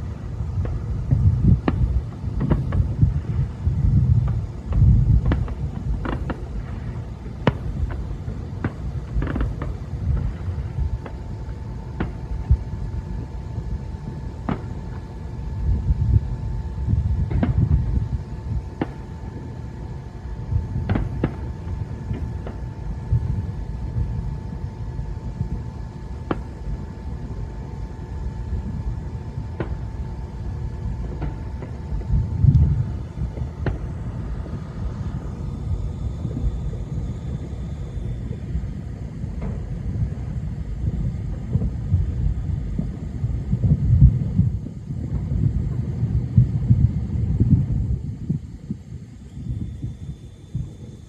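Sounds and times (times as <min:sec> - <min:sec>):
fireworks cracks and bangs: 0:00.0 - 0:13.4, 0:14.4 - 0:15.1, 0:17.2 - 0:19.6, 0:20.4 - 0:23.4
distant fireworks rumble: 0:00.0 - 0:51.0.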